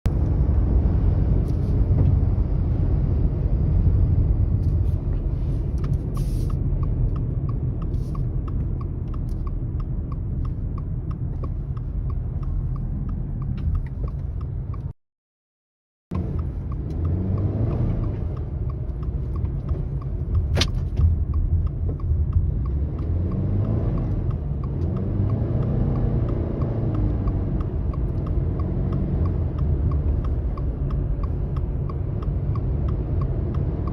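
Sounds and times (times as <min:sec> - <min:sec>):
wind buffeting a moving car: 0:00.1 - 0:14.9, 0:16.2 - 0:33.9
road noise rumble: 0:00.1 - 0:15.0, 0:16.1 - 0:33.9
light regular ticking: 0:02.8 - 0:14.9, 0:16.2 - 0:33.9.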